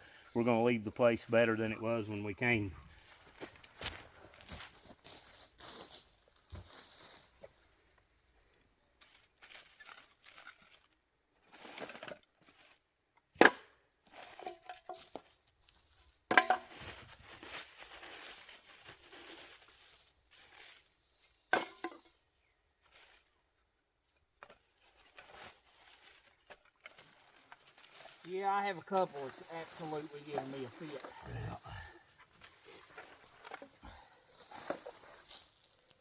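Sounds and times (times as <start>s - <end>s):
plastic bag crinkling: 24.9s - 31.4s.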